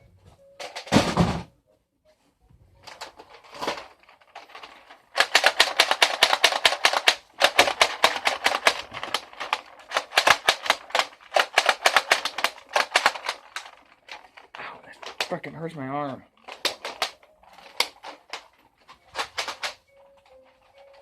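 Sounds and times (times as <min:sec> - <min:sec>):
toy blaster plastic clacks: 0:02.9 - 0:21.0.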